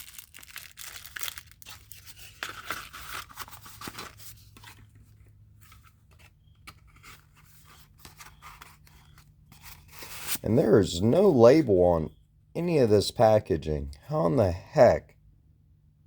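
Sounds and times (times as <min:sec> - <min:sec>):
packaging crinkling and tearing: 0:00.0 - 0:04.5.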